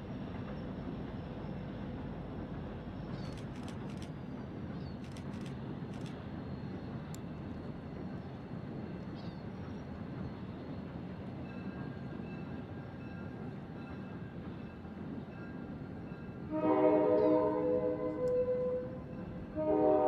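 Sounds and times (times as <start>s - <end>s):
train rumbling: 0.0s - 20.0s
locomotive air horn: 16.5s - 20.0s.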